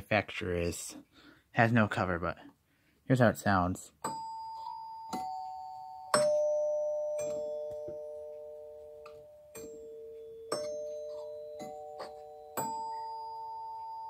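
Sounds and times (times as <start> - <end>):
musical doorbell chimes: 4.0 - 14.0.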